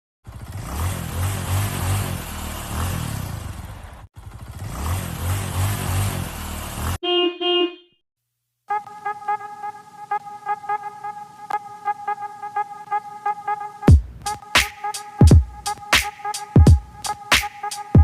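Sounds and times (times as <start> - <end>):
motorcycle engine running: 0.2 - 6.9
vehicle horn toots: 7.0 - 8.0
music with a steady beat: 13.8 - 18.0.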